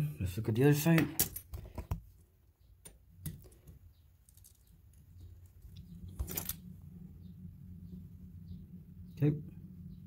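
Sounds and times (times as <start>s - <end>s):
clicks and rustles of wires: 2.8s - 6.7s.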